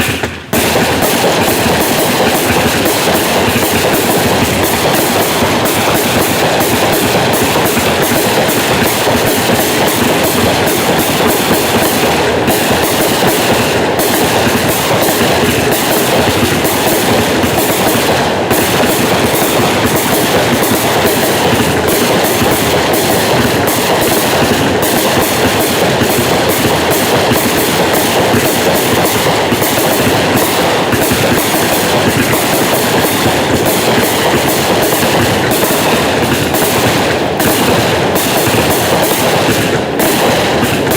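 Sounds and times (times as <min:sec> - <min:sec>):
firework cake barrage: 0:00.0 - 0:40.9.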